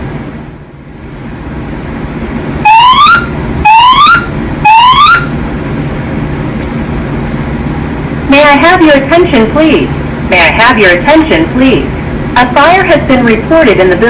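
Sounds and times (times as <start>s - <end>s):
steady low hum: 0.0s - 14.0s
rising whoop alarm tones: 2.6s - 5.4s.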